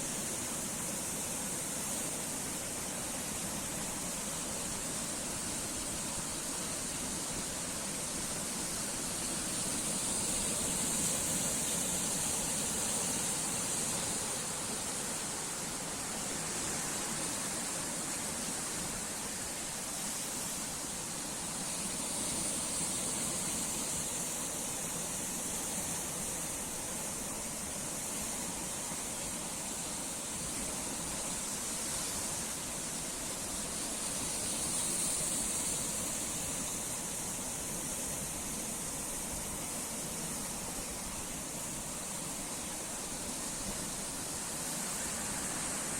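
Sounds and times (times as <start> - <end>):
sea waves breaking on shore: 0.0 - 45.9.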